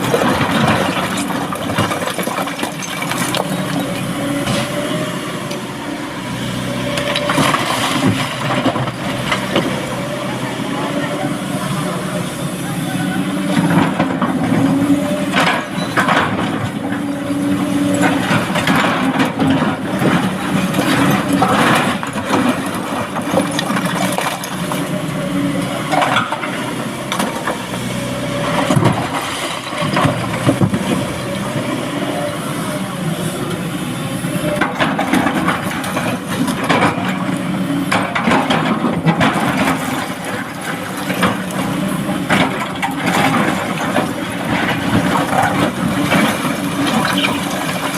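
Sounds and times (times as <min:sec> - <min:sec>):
rock loaded into dump truck: 0:00.0 - 0:04.8, 0:13.5 - 0:32.0, 0:34.3 - 0:47.9
excavator diesel engine: 0:00.0 - 0:47.9.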